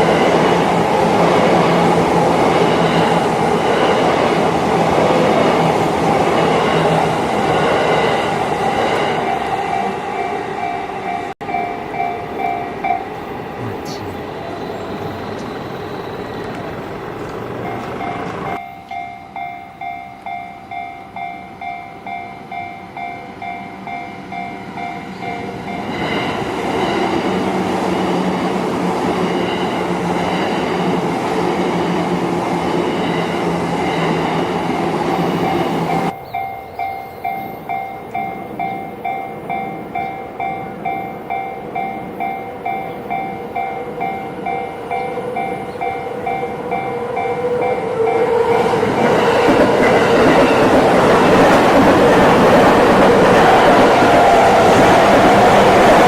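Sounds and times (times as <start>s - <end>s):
approaching train: 0.0s - 56.0s
train passing: 0.0s - 56.0s
level crossing alarm ringing: 10.6s - 23.4s, 35.1s - 56.0s.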